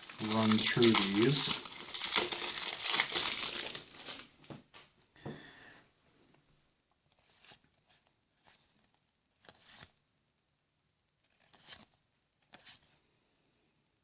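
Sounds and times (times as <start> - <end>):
trading cards rustling and sliding: 0.0 - 4.3, 7.2 - 9.9, 11.3 - 13.0
pack paper being handled: 0.0 - 4.4.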